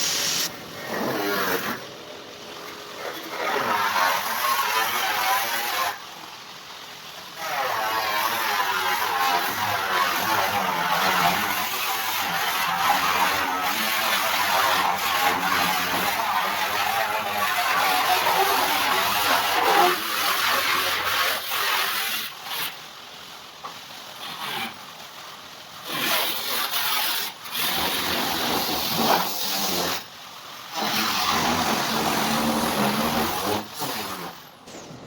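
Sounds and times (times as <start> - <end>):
rasping scraping on sheet metal: 7.4 - 22.8, 30.7 - 35.0.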